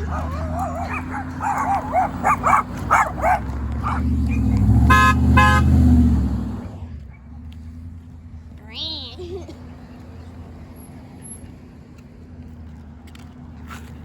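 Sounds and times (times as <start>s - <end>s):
dogs barking: 0.0s - 5.2s
truck engine rumble: 0.0s - 14.0s
air horn blasts: 4.8s - 6.0s.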